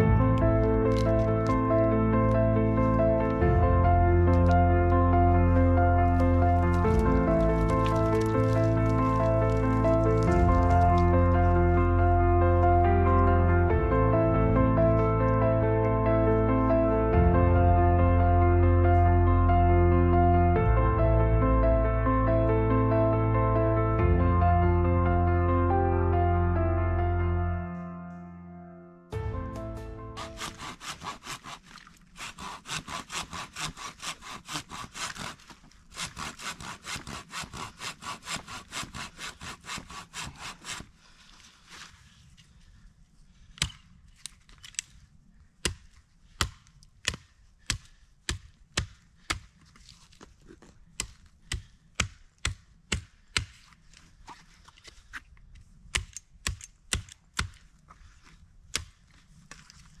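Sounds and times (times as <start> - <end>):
hand saw sawing wood: 30.2 - 41.1
sharp knocks of chopping wood: 45.6 - 49.5, 51.0 - 53.6, 55.9 - 57.6.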